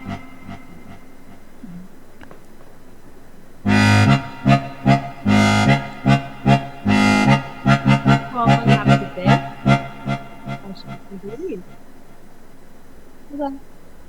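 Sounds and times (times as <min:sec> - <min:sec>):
music with accordion-like chords: 0:00.0 - 0:01.7, 0:03.6 - 0:11.9.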